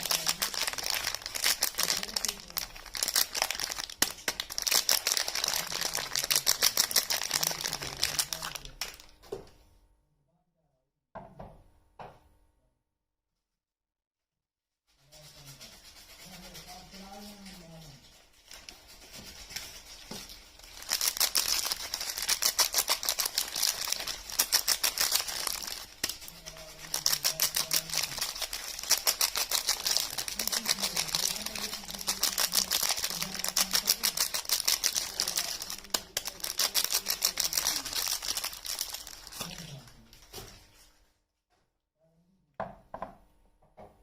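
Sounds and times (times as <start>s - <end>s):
packaging crinkling: 0.0s - 9.2s, 18.4s - 40.7s.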